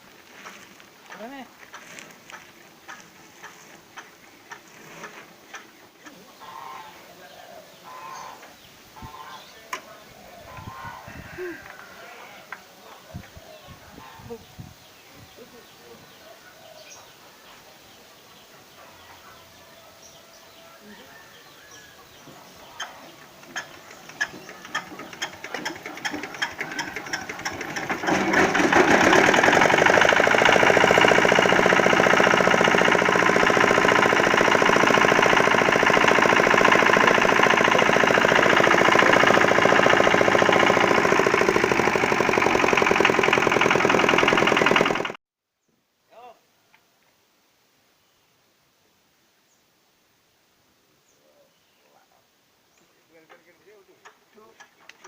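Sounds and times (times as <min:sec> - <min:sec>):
diesel engine running: 0:23.4 - 0:45.2.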